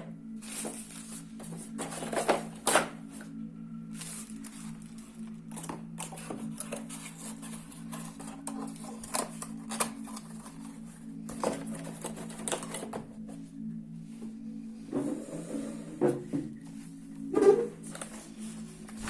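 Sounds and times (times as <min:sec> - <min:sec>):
steady low hum: 0:00.0 - 0:19.0
packaging being handled: 0:00.4 - 0:02.8, 0:04.0 - 0:13.0.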